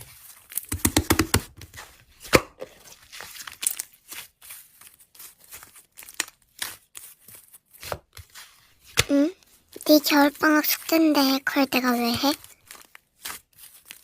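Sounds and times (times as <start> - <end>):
slime crackling and popping: 5.4 - 8.2.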